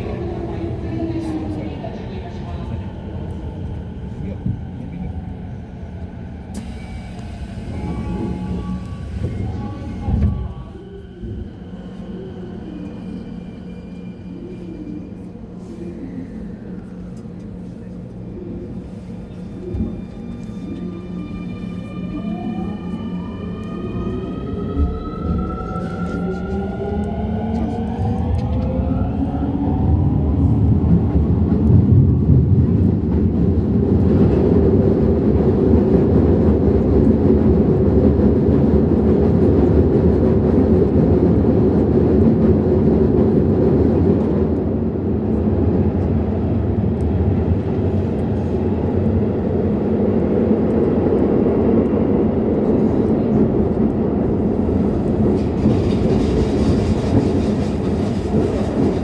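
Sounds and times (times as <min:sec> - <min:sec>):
train wheels rumbling on rail: 0:00.0 - 0:12.0, 0:16.9 - 0:59.0
train motor whine: 0:06.5 - 0:10.8.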